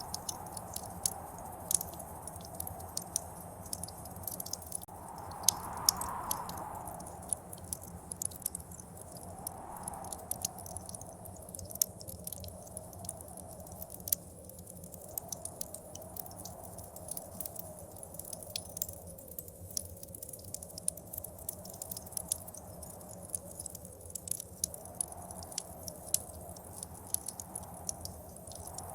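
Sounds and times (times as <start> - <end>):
blizzard wind gusting: 0.0 - 11.4, 27.4 - 28.9
wood fire crackling: 0.0 - 28.9.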